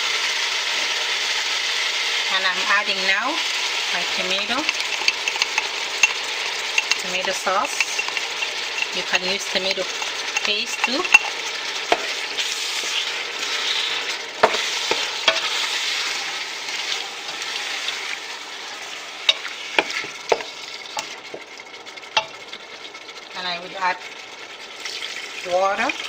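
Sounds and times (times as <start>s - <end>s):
food sizzling in hot oil: 0.0s - 26.0s
utensil clicking against pot: 4.2s - 12.4s.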